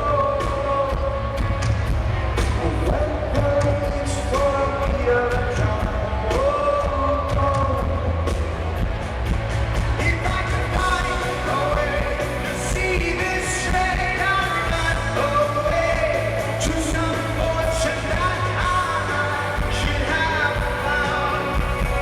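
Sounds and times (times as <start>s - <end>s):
rock band playing live: 0.0s - 22.0s
person singing: 10.0s - 22.0s.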